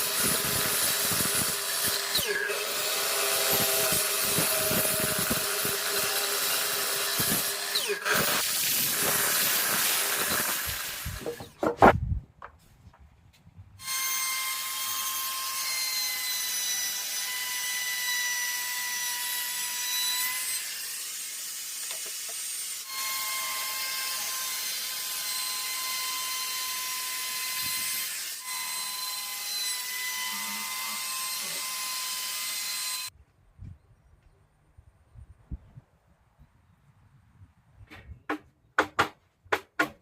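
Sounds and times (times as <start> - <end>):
electric power tool on wood: 0.0 - 11.6, 13.8 - 33.1.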